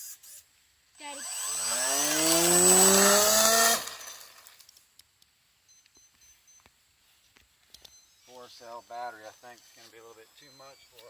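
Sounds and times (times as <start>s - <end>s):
model airplane motor whine: 1.0s - 4.5s.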